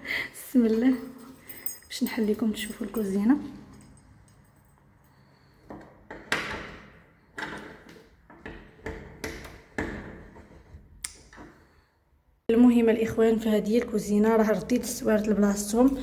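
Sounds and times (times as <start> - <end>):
keys rattling in a door lock: 0.7 - 5.3.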